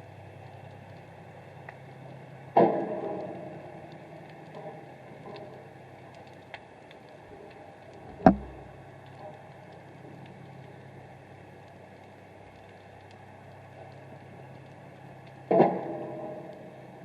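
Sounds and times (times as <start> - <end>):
underwater low hum: 0.0 - 17.0
faint clicks: 0.4 - 2.3, 3.9 - 15.5
sharp knock: 8.2 - 8.6.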